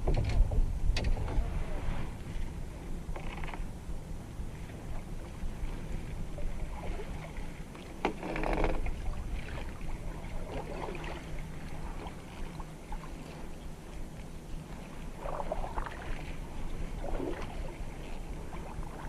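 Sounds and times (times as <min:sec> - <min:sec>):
steady low rumble: 0:00.0 - 0:08.0, 0:08.7 - 0:19.0
paddle strokes splashing: 0:04.4 - 0:19.0.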